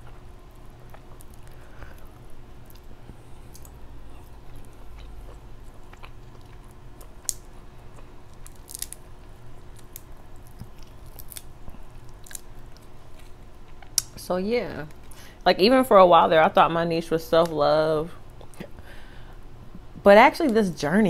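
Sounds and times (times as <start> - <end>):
person chewing and smacking food: 0.0 - 14.2.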